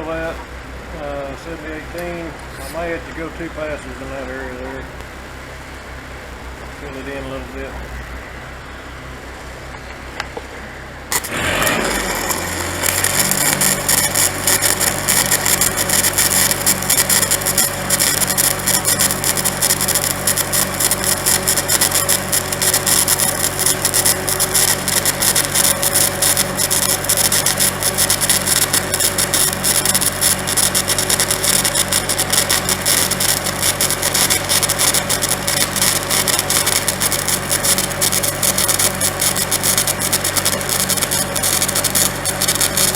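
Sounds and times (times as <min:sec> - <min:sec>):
welder engine running: 0:00.0 - 0:42.9
welding arc crackling: 0:11.1 - 0:42.9.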